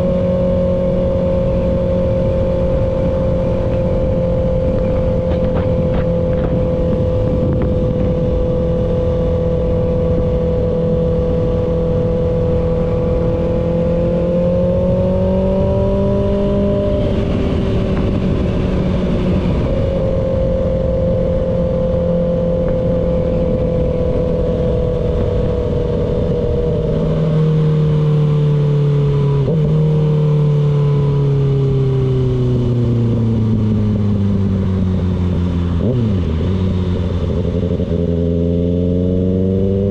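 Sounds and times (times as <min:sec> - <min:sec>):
wind rush: 0:00.0 - 0:28.0
motorcycle engine running: 0:00.0 - 0:39.9.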